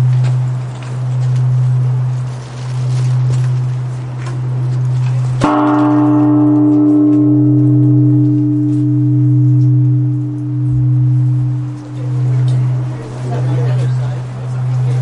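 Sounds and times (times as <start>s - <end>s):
deep steady hum: 0.0s - 15.0s
temple bell ringing: 3.0s - 15.0s.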